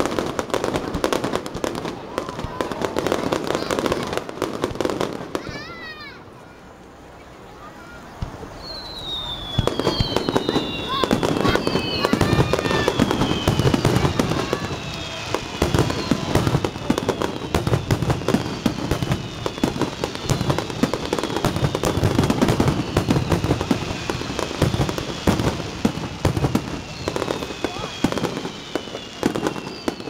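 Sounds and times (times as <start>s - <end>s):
fireworks bangs and crackles: 0.0s - 30.0s
descending firework whistles: 7.5s - 30.0s.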